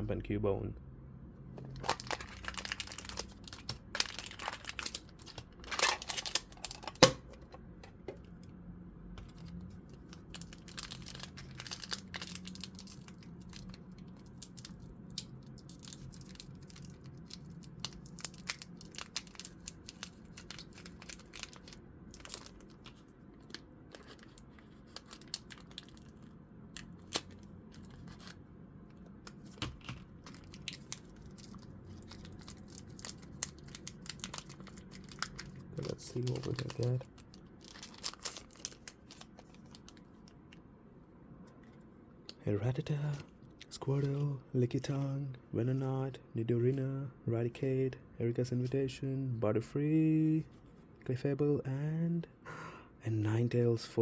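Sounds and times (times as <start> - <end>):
foil wrappers crinkling and tearing: 1.7 - 7.2, 9.3 - 28.4, 29.5 - 40.1.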